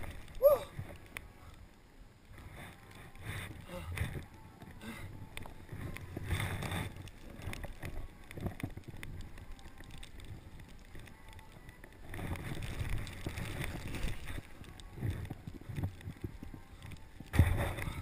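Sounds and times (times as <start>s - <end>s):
wind rumble on microphone: 0.0s - 18.0s
snowboard scraping over snow: 12.0s - 18.0s.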